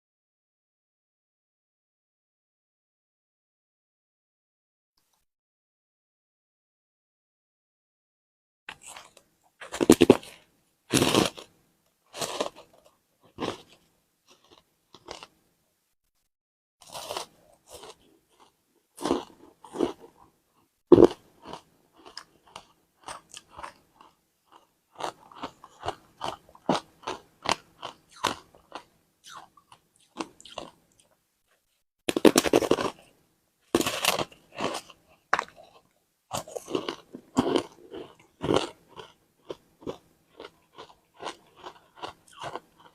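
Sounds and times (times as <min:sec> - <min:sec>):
ice being bitten and chewed: 0:08.7 - 0:11.5, 0:12.1 - 0:15.3, 0:16.8 - 0:20.3, 0:20.9 - 0:31.2, 0:32.1 - 0:33.2, 0:33.8 - 0:42.9.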